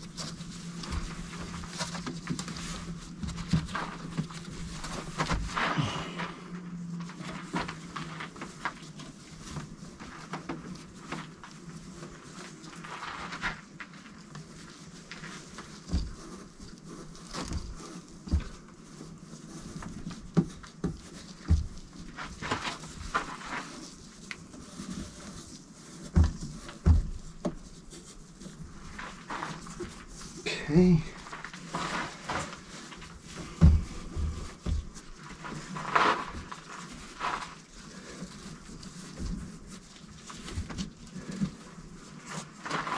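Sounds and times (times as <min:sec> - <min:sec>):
rustling handling noise: 0:00.0 - 0:42.9
knocks and thumps: 0:33.5 - 0:35.0.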